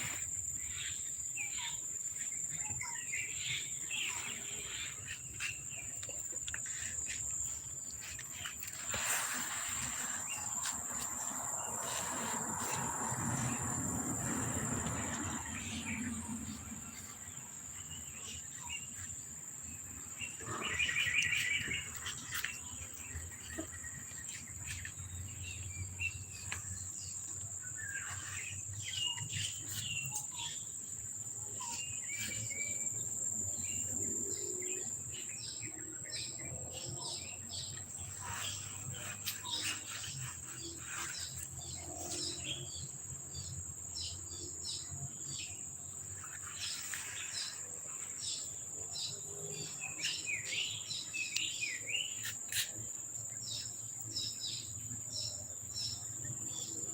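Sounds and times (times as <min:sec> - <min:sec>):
birds chirping: 0:00.0 - 0:30.8.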